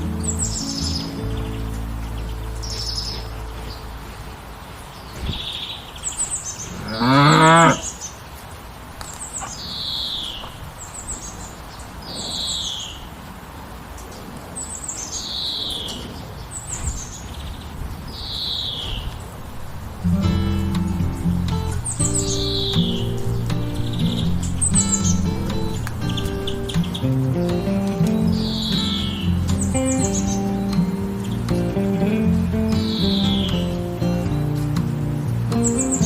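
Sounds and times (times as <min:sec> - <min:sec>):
cow mooing: 0:06.8 - 0:07.8
bird call of falling notes: 0:20.1 - 0:34.8.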